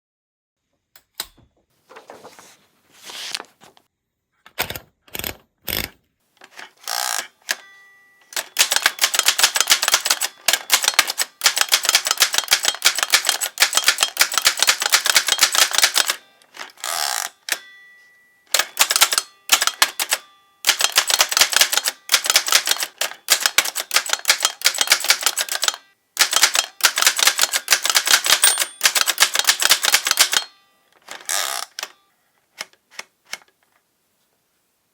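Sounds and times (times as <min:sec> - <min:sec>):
typewriter bell ring: 0:07.1 - 0:30.7
typewriter keystrokes clicking: 0:08.3 - 0:16.2, 0:18.5 - 0:30.5.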